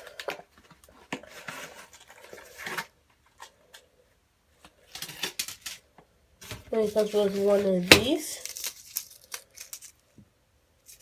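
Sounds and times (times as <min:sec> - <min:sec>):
packaging rustling: 0:06.4 - 0:10.1.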